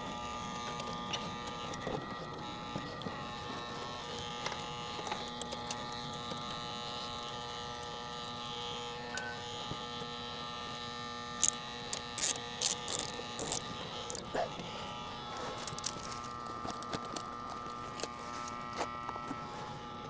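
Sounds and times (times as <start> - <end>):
electrical buzzing hum: 3.2 - 20.0
sharp electrical clicks and snaps: 11.4 - 14.3, 15.6 - 17.4.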